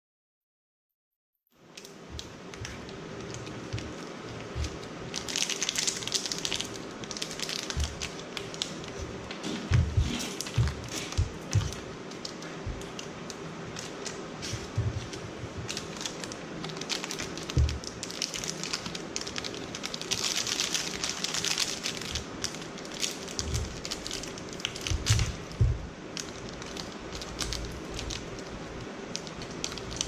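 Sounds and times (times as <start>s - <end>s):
plastic wrapper crinkling: 1.7s - 30.0s
low handling thumps: 9.7s - 11.8s, 25.0s - 26.0s.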